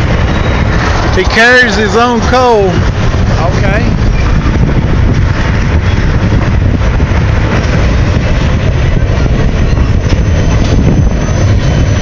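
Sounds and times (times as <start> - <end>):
train rumbling past on rails: 0.0 - 12.0.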